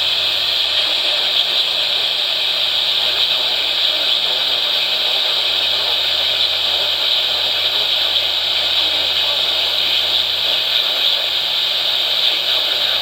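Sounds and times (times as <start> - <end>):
radio static hiss: 0.0 - 13.0.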